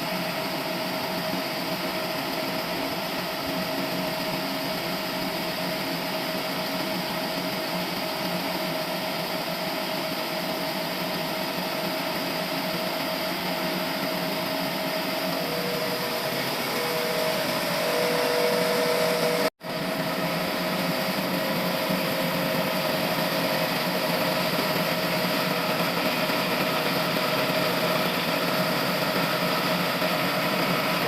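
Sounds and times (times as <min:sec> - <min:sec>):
constant machine whine: 0:00.0 - 0:31.0
sawmill machinery running: 0:00.0 - 0:31.0.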